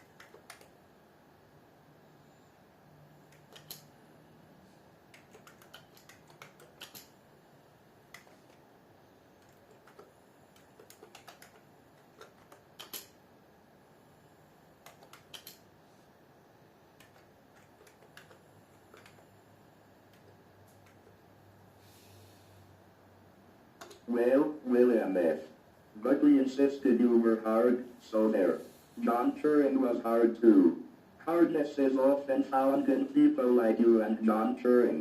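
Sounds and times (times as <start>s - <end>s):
computer keyboard typing: 0.0s - 0.8s, 3.2s - 3.9s, 5.1s - 7.2s, 8.1s - 8.6s, 9.4s - 13.2s, 14.8s - 15.7s, 17.0s - 19.4s, 20.1s - 21.2s.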